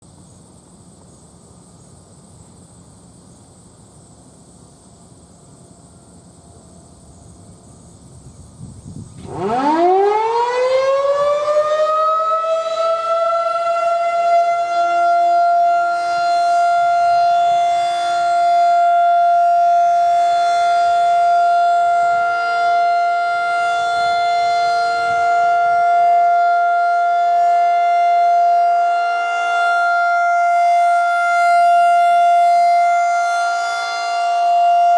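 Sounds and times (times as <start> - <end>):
outdoor warning siren: 9.2 - 34.9.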